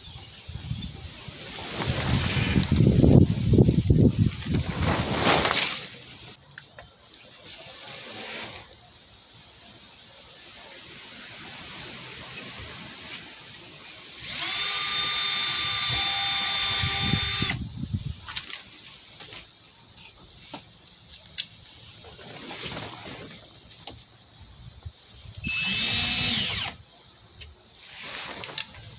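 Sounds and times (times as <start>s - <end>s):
cordless drill whining: 2.2s - 2.7s, 13.9s - 17.6s, 25.4s - 26.8s.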